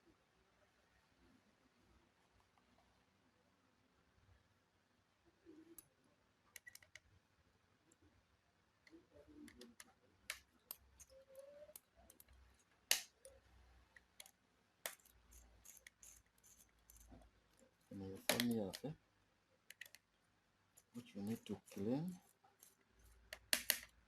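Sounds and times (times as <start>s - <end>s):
laptop parts clicking: 6.5s - 7.1s, 8.9s - 18.9s, 19.6s - 20.1s, 20.8s - 24.0s
sharp clicks: 18.2s - 18.9s.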